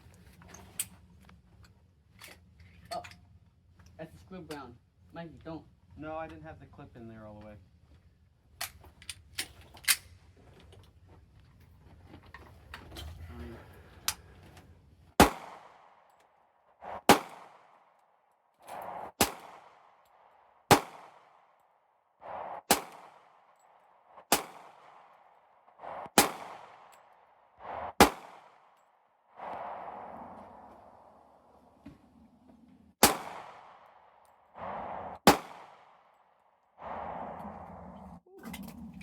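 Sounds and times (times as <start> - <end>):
pistol shots: 15.2 - 16.0, 17.0 - 17.8, 19.1 - 20.0, 20.7 - 21.4, 22.6 - 23.4, 24.2 - 25.2, 26.1 - 27.1, 27.9 - 28.7, 33.0 - 34.0, 35.2 - 36.1.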